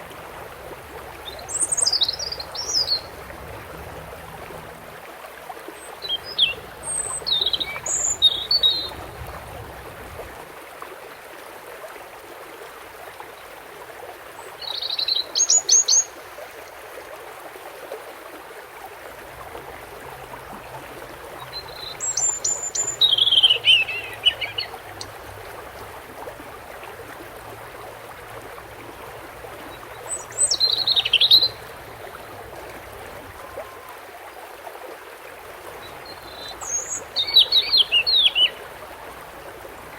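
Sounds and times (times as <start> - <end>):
running water rushing: 0.0 - 39.9
goldfinch twittering song: 0.2 - 5.0, 5.8 - 9.4, 14.4 - 16.3, 21.1 - 25.8, 29.4 - 34.0, 35.8 - 38.9.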